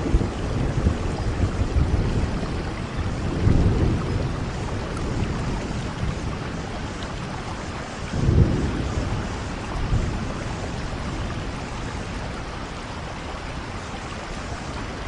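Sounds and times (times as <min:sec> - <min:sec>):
low rolling thunder: 0:00.0 - 0:14.2
steady rain: 0:00.0 - 0:15.0.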